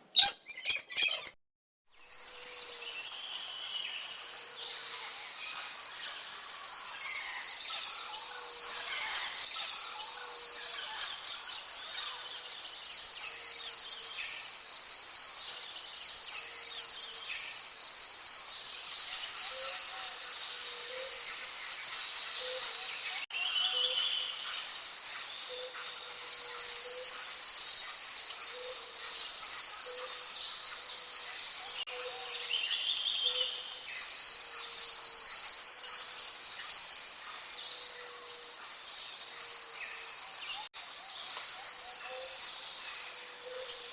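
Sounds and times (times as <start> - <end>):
bird calls: 0.0 - 1.4
high-pitched insect chorus: 2.0 - 43.9.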